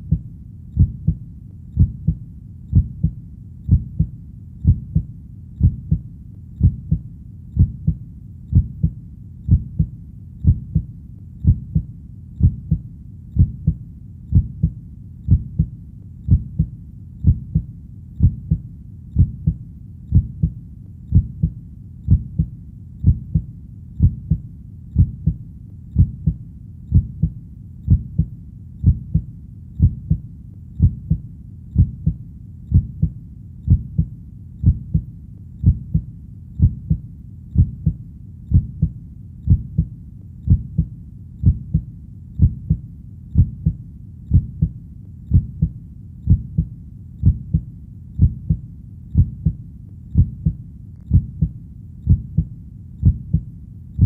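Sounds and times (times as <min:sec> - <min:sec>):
faint low hum: 0:00.0 - 0:54.0
heartbeat thumps: 0:00.0 - 0:54.0.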